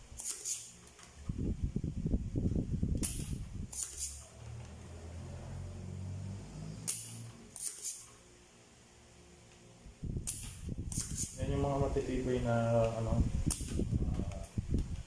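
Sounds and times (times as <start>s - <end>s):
sharp snapping clicks: 3.0s - 4.0s, 6.8s - 7.9s, 10.2s - 11.3s, 12.8s - 15.0s.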